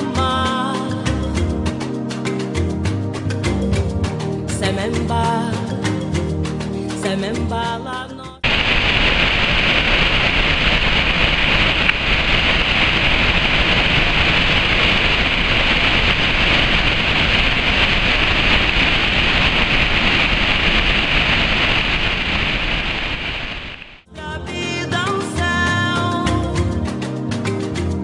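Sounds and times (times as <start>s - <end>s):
waterfall rushing: 8.4s - 24.0s.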